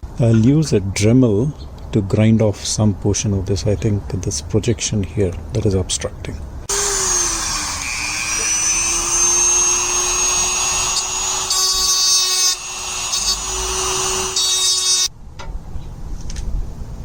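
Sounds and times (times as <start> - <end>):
rotary tool grinding: 6.7 - 15.1.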